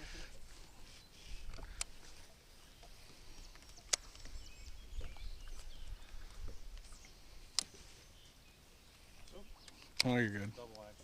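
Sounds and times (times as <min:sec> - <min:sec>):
sharp clicks: 0:03.6 - 0:04.4, 0:07.5 - 0:07.7, 0:09.3 - 0:10.9.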